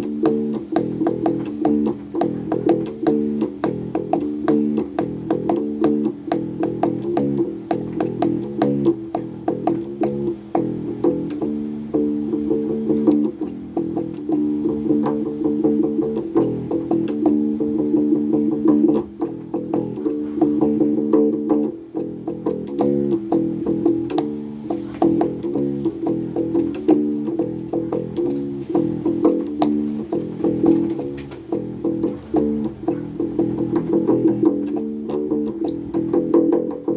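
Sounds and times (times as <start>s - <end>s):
bass guitar plucked notes: 0.0s - 36.9s.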